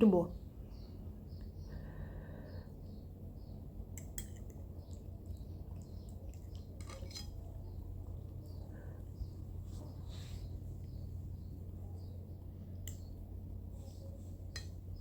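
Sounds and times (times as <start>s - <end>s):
cutlery clinking and scraping plate: 6.3s - 7.5s.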